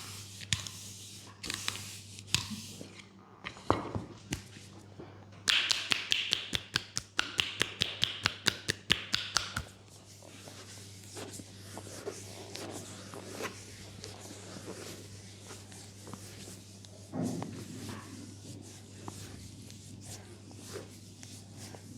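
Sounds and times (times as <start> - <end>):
hands slapping on skin: 5.5 - 9.8
hands rubbing skin: 5.5 - 21.9.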